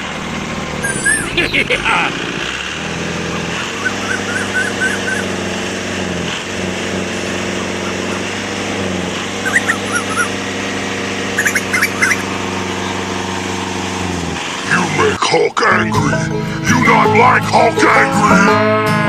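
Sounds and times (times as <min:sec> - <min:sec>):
small motor humming: 0:00.0 - 0:13.2
short high yelps: 0:00.8 - 0:01.4, 0:03.7 - 0:05.3, 0:09.5 - 0:10.3, 0:11.4 - 0:12.2.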